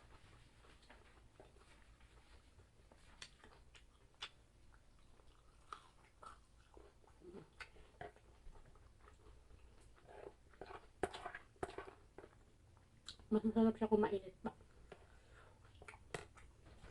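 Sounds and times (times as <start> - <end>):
soft chewing: 0.0 - 13.6, 14.4 - 16.9.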